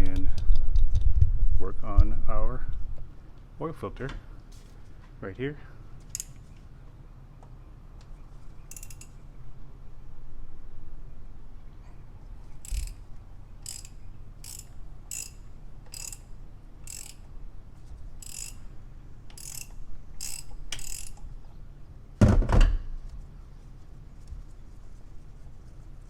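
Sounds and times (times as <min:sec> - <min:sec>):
ratchet pawl clicking: 0:06.1 - 0:06.4, 0:08.7 - 0:09.2, 0:12.6 - 0:17.3, 0:18.2 - 0:18.7, 0:19.3 - 0:21.3.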